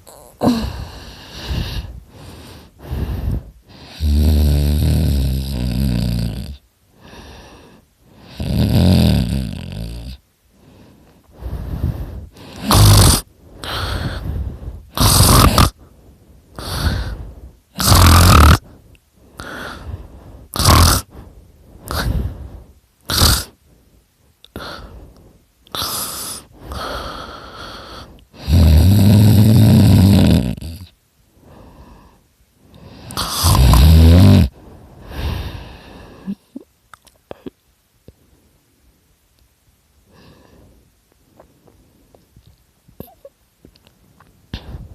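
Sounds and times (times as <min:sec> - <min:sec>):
person snoring loudly: 0:00.0 - 0:01.9, 0:02.8 - 0:06.6, 0:08.2 - 0:10.2, 0:11.8 - 0:15.8, 0:16.6 - 0:18.7, 0:19.4 - 0:21.2, 0:21.8 - 0:22.4, 0:23.1 - 0:23.6, 0:25.7 - 0:30.9, 0:33.0 - 0:34.6.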